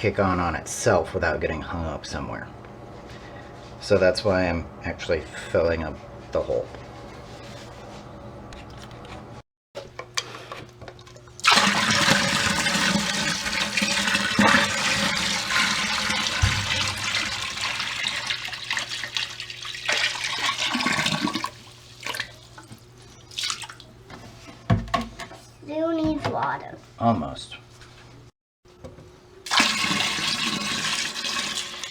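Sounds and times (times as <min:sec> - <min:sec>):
water pouring and splashing: 0:11.0 - 0:22.6, 0:23.3 - 0:23.9, 0:29.5 - 0:31.9.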